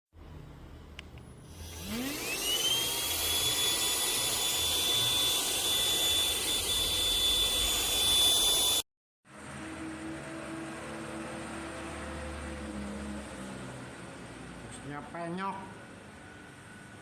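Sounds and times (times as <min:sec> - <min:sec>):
vacuum cleaner motor whine: 0:01.5 - 0:08.8.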